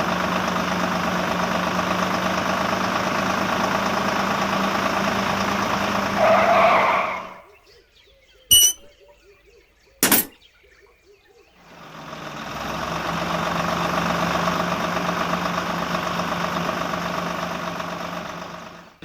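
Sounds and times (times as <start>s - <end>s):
sharp click: 10.0s - 10.4s.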